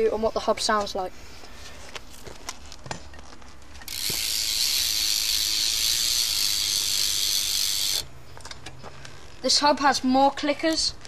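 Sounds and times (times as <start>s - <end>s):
freewheel hub clicking buzz: 3.8s - 8.4s.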